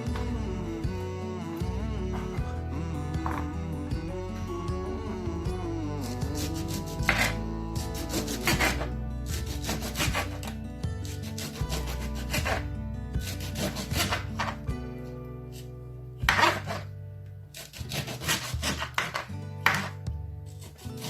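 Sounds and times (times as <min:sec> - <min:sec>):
background music: 0:00.0 - 0:21.0
rasping strokes on wooden board: 0:06.0 - 0:14.7, 0:16.3 - 0:16.9, 0:17.6 - 0:21.0.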